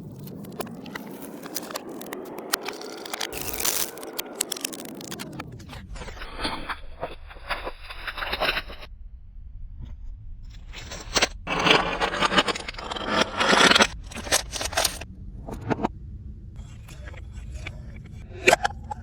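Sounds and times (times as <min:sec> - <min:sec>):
slime scraping and crunching: 0:00.3 - 0:05.4, 0:10.8 - 0:15.0
steady low hum: 0:05.3 - 0:19.0.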